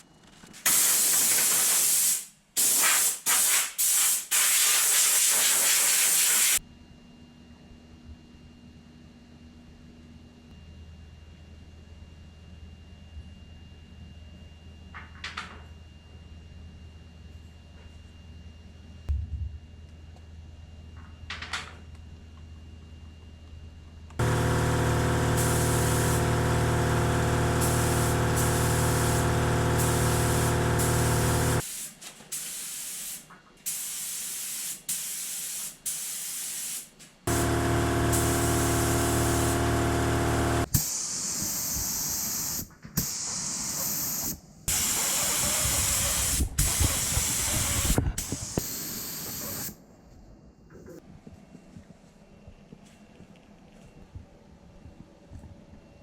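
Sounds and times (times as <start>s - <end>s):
paint spray hissing: 0.7s - 6.6s, 24.2s - 39.7s
small electric motor running: 24.2s - 31.6s, 37.3s - 40.7s.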